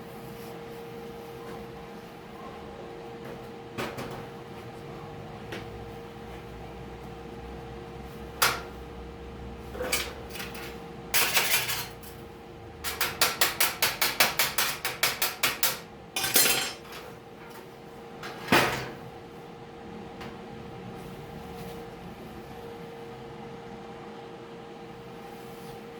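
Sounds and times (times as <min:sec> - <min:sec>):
hammer striking sheet steel: 0:12.8 - 0:16.8.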